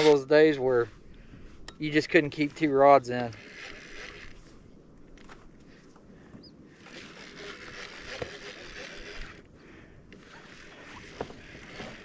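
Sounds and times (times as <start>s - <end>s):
water splashing around boat: 6.7s - 12.0s.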